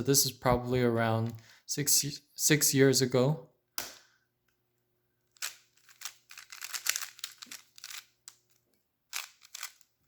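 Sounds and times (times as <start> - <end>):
puzzle cube turns clicking: 5.4 - 8.4, 9.1 - 9.9.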